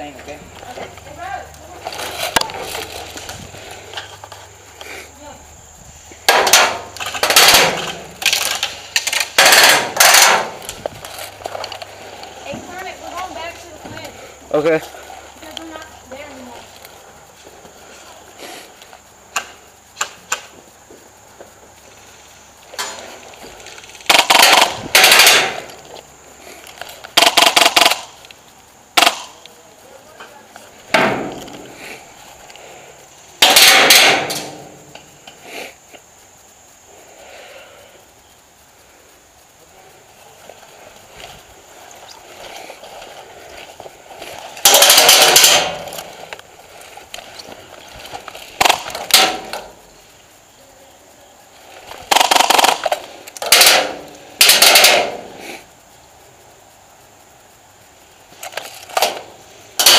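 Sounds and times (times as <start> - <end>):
airsoft guns full-auto bursts: 6.3 - 10.5, 24.0 - 25.6, 27.1 - 28.2, 28.9 - 29.4, 44.6 - 45.9, 48.6 - 49.4, 52.1 - 55.1
sharp clicks: 26.6 - 28.4, 29.0 - 29.6.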